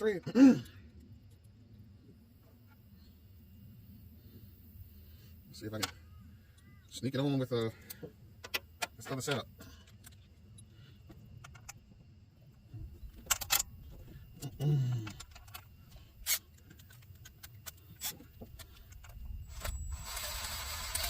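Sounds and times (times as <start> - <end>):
metal parts clinking: 13.0 - 19.9
low vocal grunt: 14.4 - 15.2.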